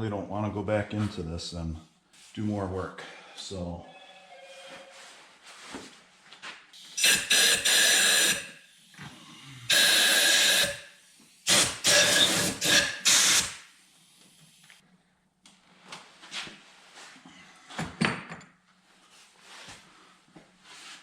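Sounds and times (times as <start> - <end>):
loud hissing blasts: 7.0 - 8.7, 9.7 - 13.7.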